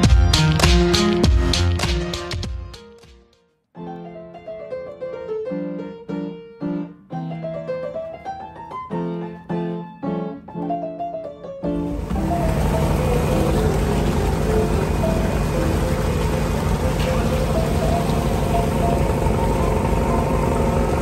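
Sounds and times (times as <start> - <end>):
piano melody: 3.8 - 21.0
engine noise: 11.8 - 21.0.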